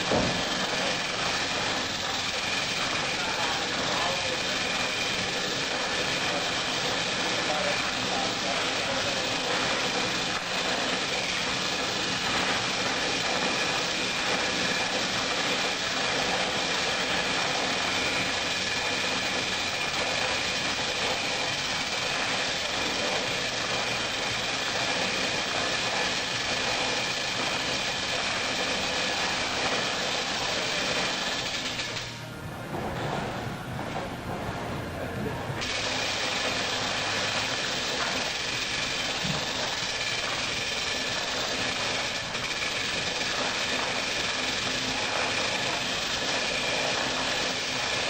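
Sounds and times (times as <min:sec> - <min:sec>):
mechanical running noise: 0:00.0 - 0:48.0.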